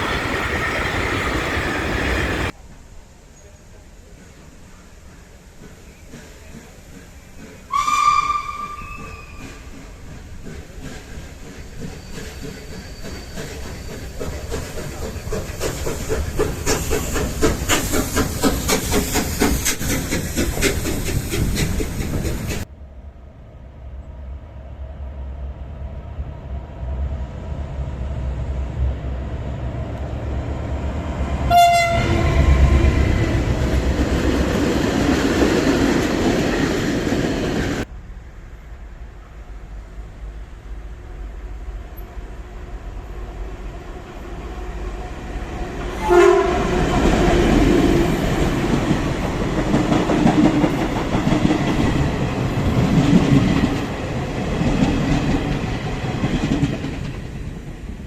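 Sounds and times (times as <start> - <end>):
train wheels clickety-clack: 0.0 - 2.6, 4.0 - 22.7, 31.5 - 37.9, 45.6 - 57.9
train passing close: 0.0 - 58.0
train horn blast: 7.7 - 9.6, 31.5 - 32.6, 45.8 - 47.4.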